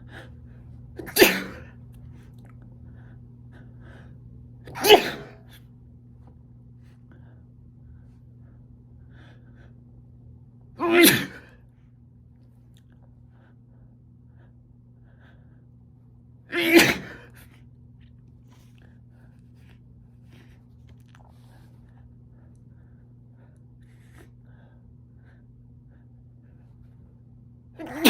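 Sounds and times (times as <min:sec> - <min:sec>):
faint low hum: 0:00.0 - 0:28.0
man sneezing: 0:01.0 - 0:01.7, 0:04.7 - 0:05.5, 0:10.8 - 0:11.6, 0:16.5 - 0:17.4.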